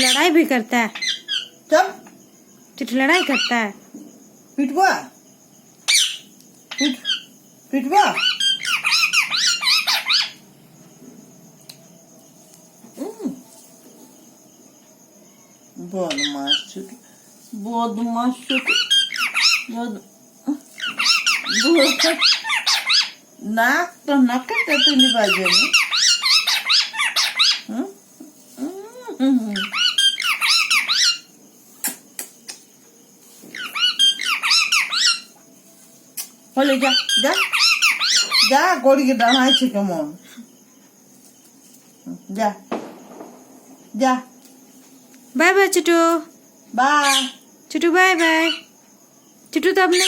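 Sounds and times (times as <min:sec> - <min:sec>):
parrot squawking: 0:00.9 - 0:01.5, 0:03.2 - 0:03.6, 0:05.9 - 0:07.3, 0:08.0 - 0:10.4, 0:16.1 - 0:16.7, 0:18.5 - 0:19.8, 0:20.8 - 0:23.2, 0:24.6 - 0:27.7, 0:29.5 - 0:31.3, 0:33.5 - 0:35.3, 0:36.6 - 0:39.7, 0:47.0 - 0:47.4, 0:48.2 - 0:48.7.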